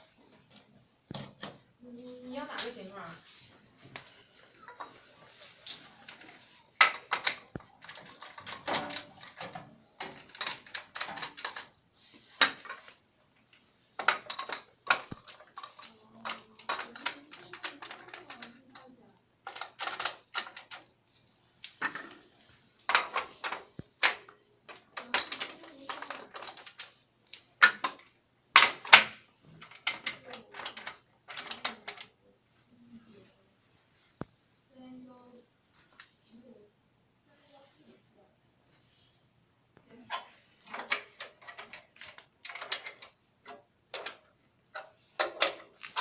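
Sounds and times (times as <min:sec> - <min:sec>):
faint steady hiss: 0:00.0 - 0:46.0
hard parts clicking and clattering: 0:03.9 - 0:20.9, 0:21.6 - 0:32.2, 0:40.0 - 0:46.0.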